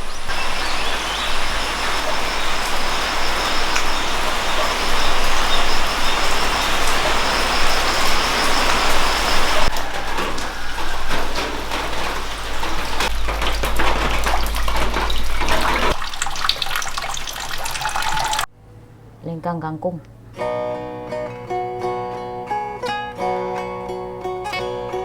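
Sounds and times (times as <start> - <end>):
water rushing: 0.0 - 18.5
water splashing with small clicks: 0.0 - 18.5.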